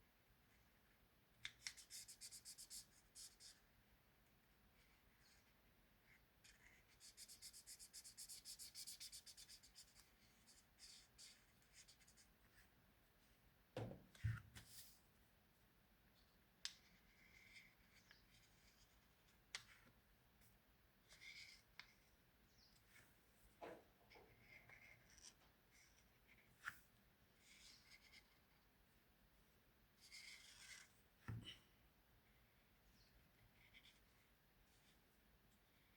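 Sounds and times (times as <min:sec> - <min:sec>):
soft thump: 0:13.8 - 0:14.4.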